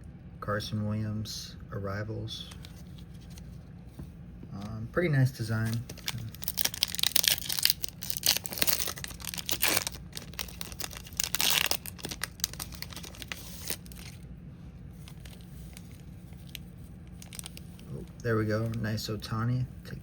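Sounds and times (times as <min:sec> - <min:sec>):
cards being handled: 0:02.4 - 0:04.8, 0:05.6 - 0:14.2
wrapper tearing and crinkling: 0:05.6 - 0:14.2, 0:15.0 - 0:18.8.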